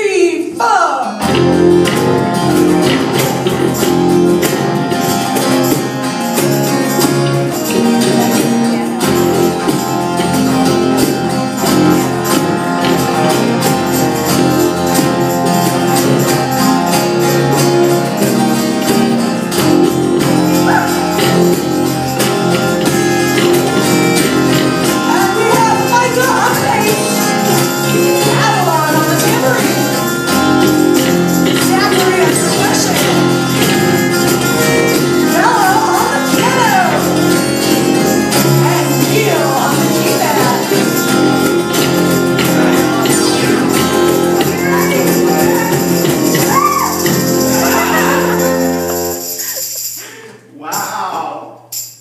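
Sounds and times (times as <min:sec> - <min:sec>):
live band playing: 0:00.0 - 0:50.2
tambourine: 0:01.4 - 0:51.0, 0:51.6 - 0:52.0
person singing: 0:35.0 - 0:49.6.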